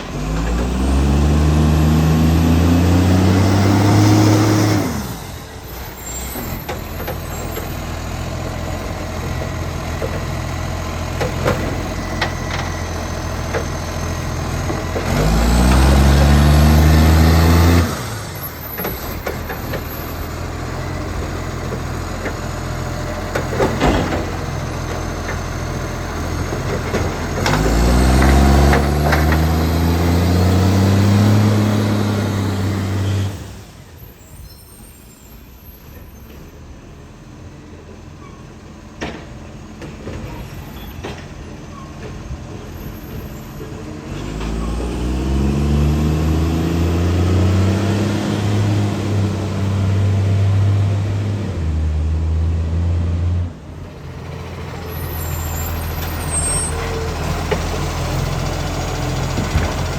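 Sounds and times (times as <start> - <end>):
garbage truck engine revving: 0.0 - 34.9, 35.8 - 59.9
sharp knocks and clanks: 6.4 - 13.8, 23.1 - 25.7, 26.4 - 31.5, 39.0 - 40.4.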